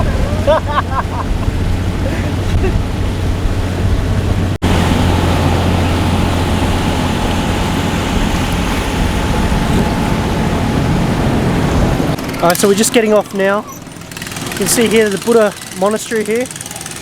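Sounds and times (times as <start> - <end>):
wind noise: 0.0 - 12.4
boat engine droning: 0.0 - 17.0
water noise: 0.0 - 17.0.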